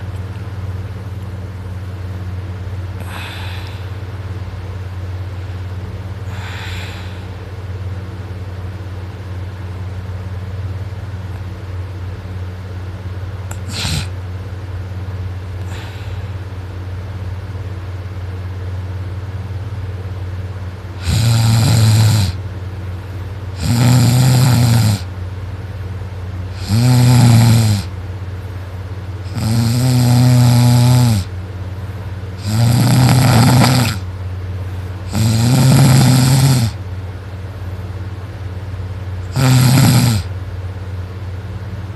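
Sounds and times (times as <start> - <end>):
steady low hum: 0.0 - 41.9
person snoring loudly: 3.0 - 4.0, 6.2 - 7.3, 13.5 - 14.2, 15.6 - 16.3, 21.0 - 22.4, 23.5 - 25.1, 26.5 - 27.9, 29.2 - 31.3, 32.4 - 34.1, 35.1 - 36.8, 39.3 - 40.3.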